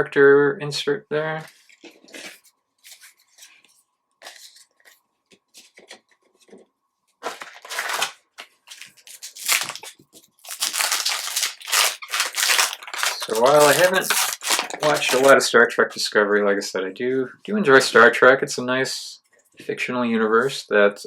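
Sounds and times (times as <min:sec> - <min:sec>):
foil wrapper rustling and tearing: 0:07.2 - 0:16.0.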